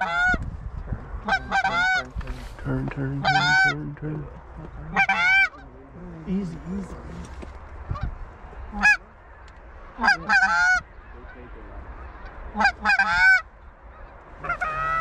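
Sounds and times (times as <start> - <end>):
goose honks and clucks: 0.0 - 0.4, 1.2 - 2.2, 3.1 - 3.9, 4.9 - 5.8, 7.9 - 15.0.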